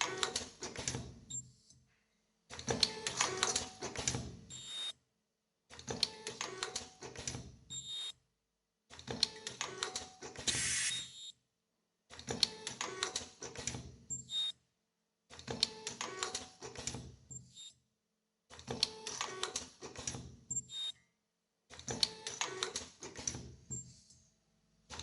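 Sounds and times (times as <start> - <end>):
burst of hiss: 10.5 - 11.0.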